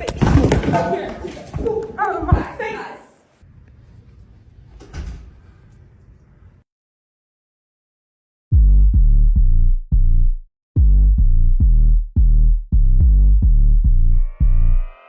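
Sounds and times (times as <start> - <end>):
electronic music with booming bass: 8.5 - 15.0.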